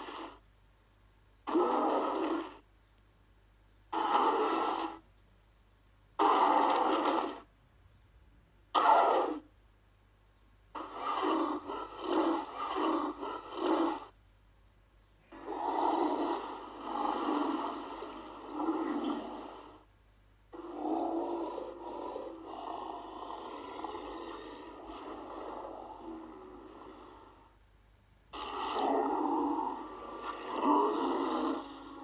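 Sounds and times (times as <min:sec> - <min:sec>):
monster growling roar: 0:01.5 - 0:02.6, 0:06.2 - 0:07.4, 0:10.8 - 0:14.1, 0:15.3 - 0:19.8, 0:20.6 - 0:27.4, 0:28.3 - 0:32.0
monster grunting snorts: 0:28.4 - 0:32.0.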